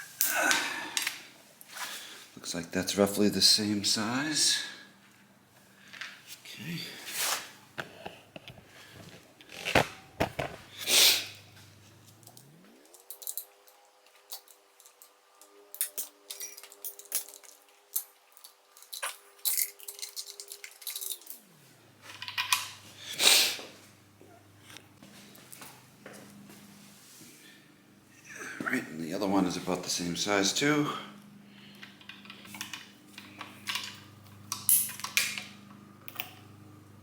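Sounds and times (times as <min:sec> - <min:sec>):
small metal parts clinking: 0:12.0 - 0:22.8, 0:31.7 - 0:36.4.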